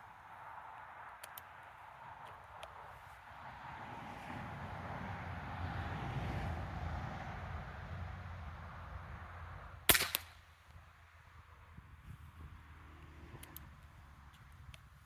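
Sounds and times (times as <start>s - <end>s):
air pistol shot: 9.9s - 10.4s
short crack: 9.9s - 10.4s.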